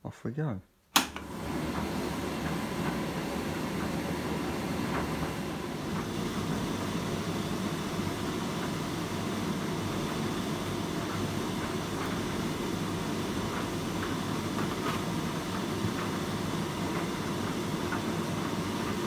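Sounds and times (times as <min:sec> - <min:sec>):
tumble dryer drum and fan rumble: 0:01.2 - 0:19.0.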